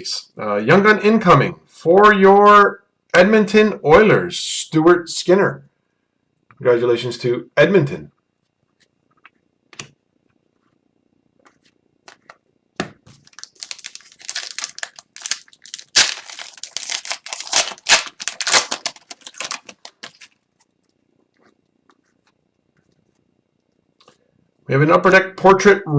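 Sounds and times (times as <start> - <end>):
foil wrapper tearing and crinkling: 13.1 - 20.4.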